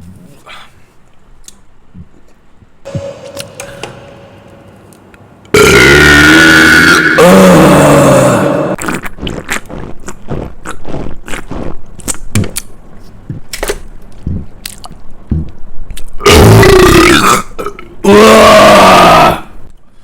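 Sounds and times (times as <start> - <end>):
man burping loudly: 5.5 - 8.8, 16.2 - 19.5.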